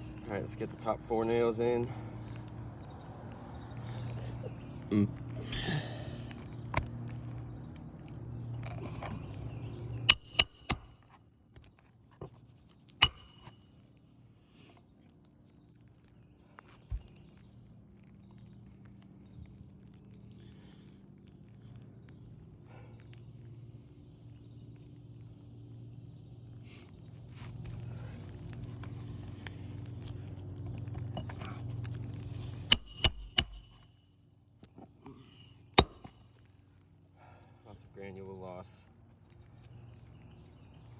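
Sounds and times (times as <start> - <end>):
steady low hum: 0.0 - 11.4, 12.8 - 14.6, 16.1 - 37.8
hammer striking roofing nails: 10.1 - 11.2, 32.7 - 33.8, 35.8 - 36.2.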